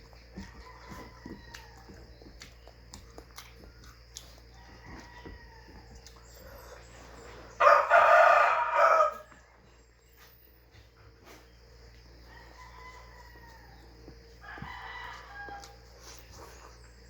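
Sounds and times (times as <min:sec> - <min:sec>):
rooster crowing: 0:00.4 - 0:02.2, 0:04.5 - 0:06.5, 0:07.5 - 0:09.5, 0:12.2 - 0:16.2.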